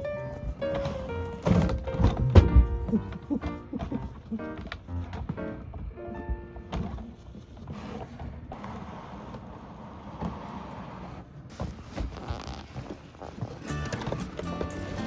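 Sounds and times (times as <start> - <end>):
knocks and clicks: 0.0 - 7.0.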